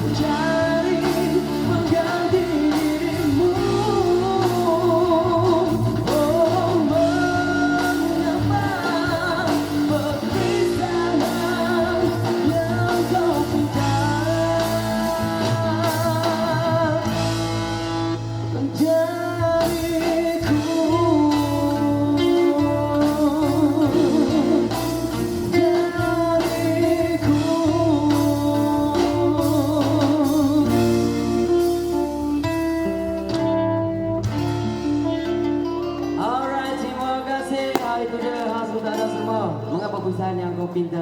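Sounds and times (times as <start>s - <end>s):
steady bass: 0.0s - 31.6s
guitar-led pop ballad: 0.0s - 41.0s.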